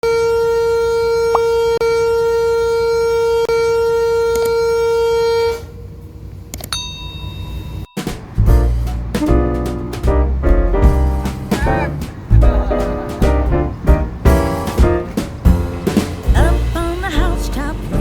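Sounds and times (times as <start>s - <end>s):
background music: 8.0s - 18.0s.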